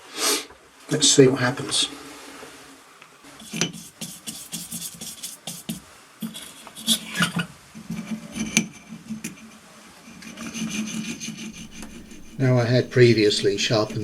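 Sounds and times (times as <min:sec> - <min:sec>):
metal scraping on whetstone: 0:03.4 - 0:05.8, 0:10.6 - 0:14.0.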